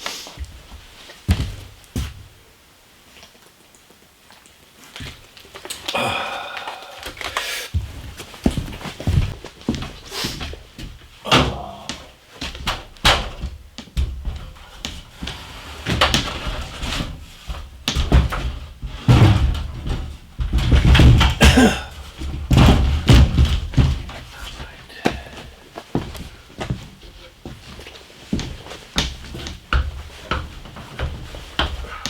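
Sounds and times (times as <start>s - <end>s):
sharp knocks and thumps: 12.5s - 25.3s.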